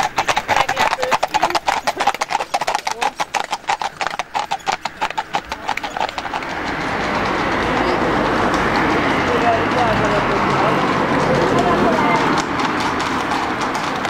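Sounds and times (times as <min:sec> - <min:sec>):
horse hooves clip-clopping: 0:00.0 - 0:14.0
steady rushing noise: 0:06.2 - 0:14.0.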